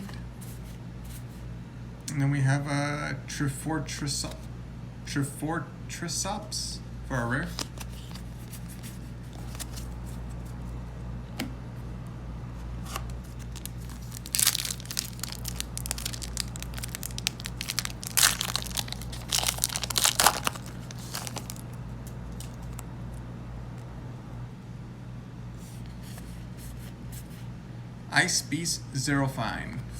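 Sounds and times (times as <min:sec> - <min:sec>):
cards being handled: 0:07.4 - 0:10.7, 0:12.8 - 0:22.9
foil wrapper crinkling and tearing: 0:07.5 - 0:10.0, 0:13.3 - 0:22.9.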